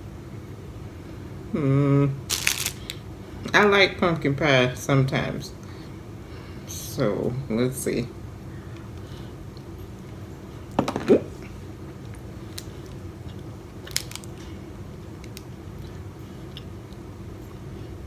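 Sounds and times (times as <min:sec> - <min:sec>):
low room hum: 0:00.0 - 0:18.0
person chewing pastry: 0:11.4 - 0:18.0.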